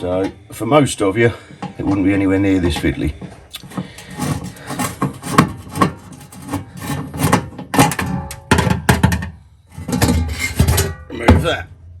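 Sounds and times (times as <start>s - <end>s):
screwdriver clicks and scrapes: 3.6s - 8.4s.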